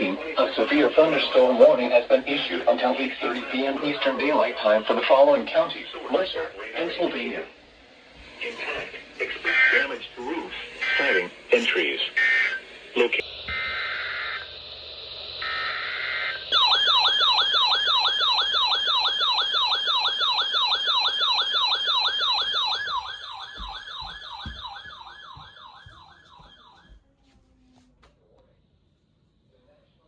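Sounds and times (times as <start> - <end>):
fast warbling electronic siren: 10.8 - 26.9.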